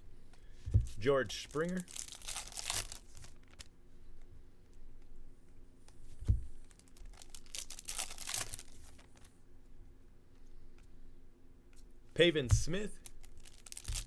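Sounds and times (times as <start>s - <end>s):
foil wrapper tearing and crinkling: 1.5s - 3.7s, 6.6s - 9.3s, 12.9s - 14.0s.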